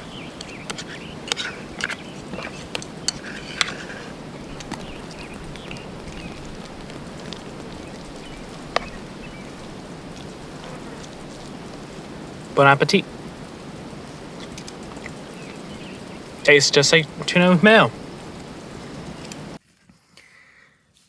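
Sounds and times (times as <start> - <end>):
food mixing clicks and scrapes: 0.0 - 12.5, 13.1 - 16.2
background hiss: 0.0 - 21.0.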